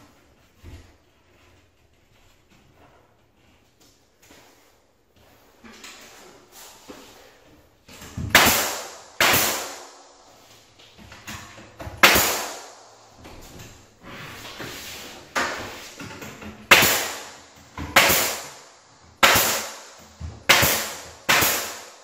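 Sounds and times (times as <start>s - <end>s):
nail gun shots: 8.3s - 10.0s, 12.0s - 12.8s, 16.7s - 18.6s, 19.2s - 22.0s.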